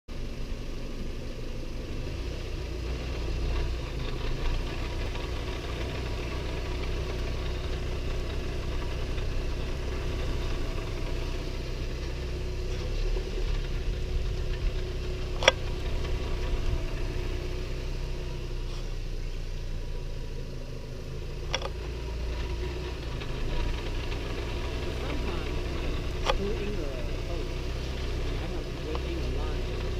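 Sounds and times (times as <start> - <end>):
car engine running: 0.1 - 29.9
sharp clicks: 26.2 - 26.4.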